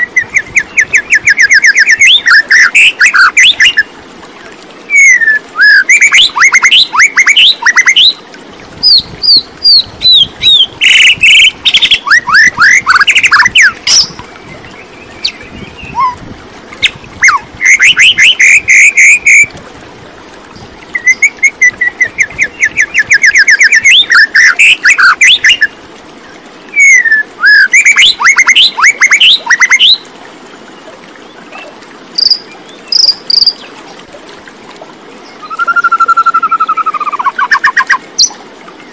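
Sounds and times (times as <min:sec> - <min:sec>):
songbird whistling and trilling: 0:00.0 - 0:03.9, 0:04.9 - 0:08.2, 0:08.8 - 0:14.2, 0:15.1 - 0:16.2, 0:16.8 - 0:19.5, 0:20.9 - 0:25.7, 0:26.7 - 0:30.0, 0:35.4 - 0:38.4.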